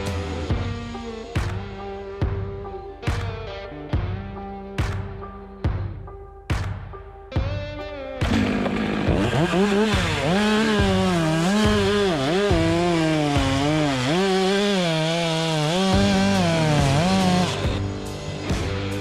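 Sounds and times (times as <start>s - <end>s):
chainsaw at high revs: 0.0s - 2.2s, 8.2s - 19.0s.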